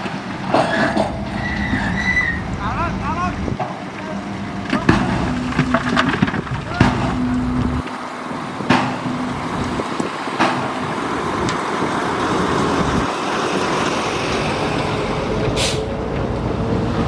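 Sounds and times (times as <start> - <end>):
diesel engine running: 0.0 - 17.0
hissing air burst: 15.4 - 16.0.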